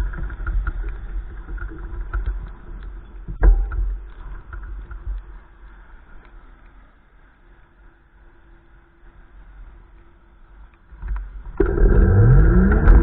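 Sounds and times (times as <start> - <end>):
light ticks: 0.0 - 6.9, 9.9 - 13.0
storm wind buffeting microphone: 11.5 - 13.0.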